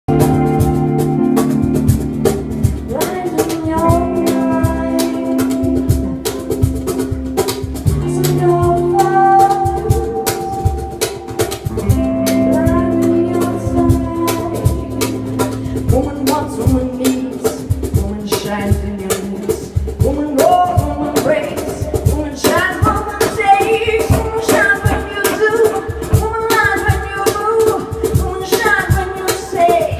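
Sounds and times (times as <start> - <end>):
live band playing: 0.0 - 29.9
sliding lead melody: 0.1 - 17.9
drum kit beat: 0.1 - 29.9.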